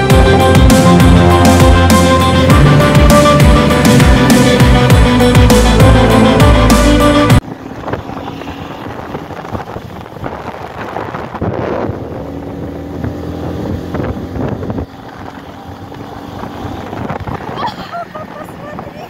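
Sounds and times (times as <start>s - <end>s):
motorcycle engine running: 0.0s - 17.6s
wind buffeting microphone: 7.4s - 19.0s.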